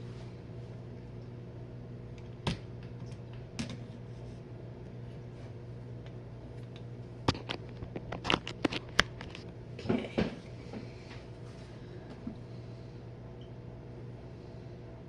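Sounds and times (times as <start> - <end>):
dishwasher motor hum: 0.0 - 15.0.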